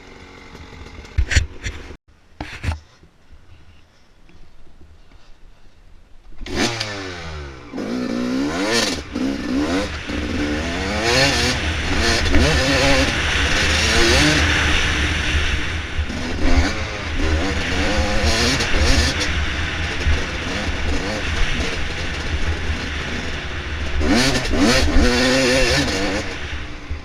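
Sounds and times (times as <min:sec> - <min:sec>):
dirt bike engine revving: 0:00.0 - 0:02.0, 0:06.4 - 0:27.0
steady rushing noise: 0:05.9 - 0:27.0.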